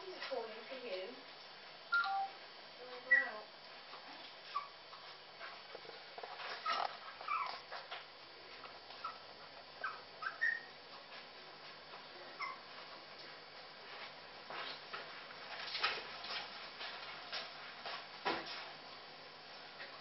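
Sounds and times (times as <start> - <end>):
puppies squeaking and whimpering: 1.9 - 2.3, 3.0 - 3.4, 4.4 - 4.8, 6.4 - 7.7, 9.8 - 10.8, 12.4 - 12.7.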